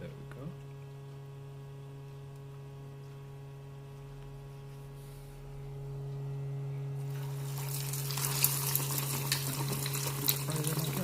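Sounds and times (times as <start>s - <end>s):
electrical hum: 0.0s - 11.0s
meat sizzling and crackling in oil: 7.1s - 11.0s.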